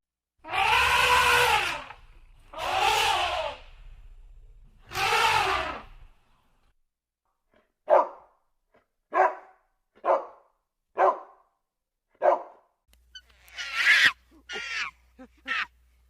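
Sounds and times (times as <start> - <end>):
dog barking: 7.8 - 8.4, 9.1 - 11.5, 12.2 - 12.7.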